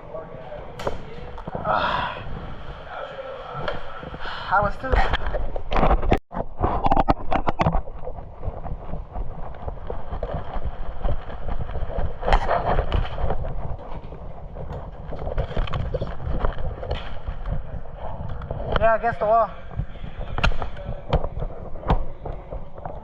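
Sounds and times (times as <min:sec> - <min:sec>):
microphone handling rustle: 0:00.6 - 0:04.2, 0:04.8 - 0:19.0.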